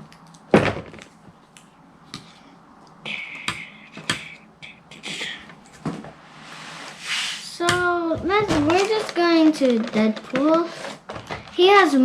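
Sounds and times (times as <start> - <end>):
plastic scraping rustle: 8.2 - 11.8.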